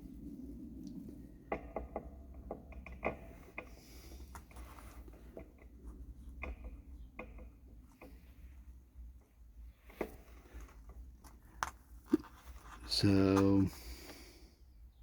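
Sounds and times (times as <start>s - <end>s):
soft rustle: 3.3s - 6.3s, 7.7s - 14.4s.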